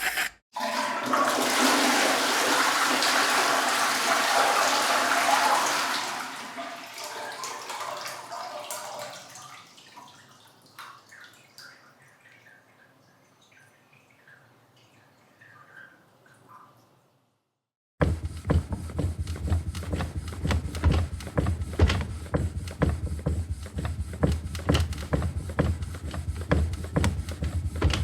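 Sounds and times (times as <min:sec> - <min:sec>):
water trickling and dripping: 0:04.2 - 0:17.1.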